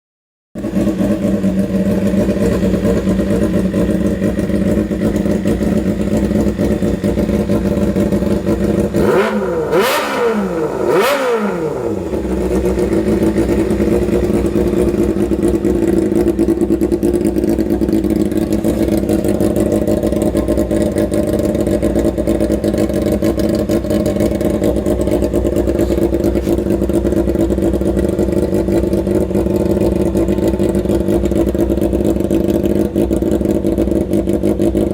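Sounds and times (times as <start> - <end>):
engine idling with open exhaust: 0.6 - 34.9
engine revving: 0.6 - 34.9.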